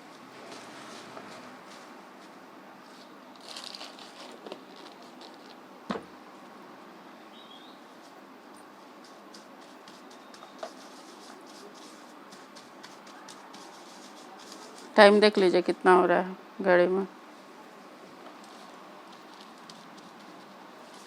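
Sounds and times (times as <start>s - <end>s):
light handling ticks and rustles: 0.4s - 5.6s, 8.0s - 15.1s, 18.2s - 21.0s.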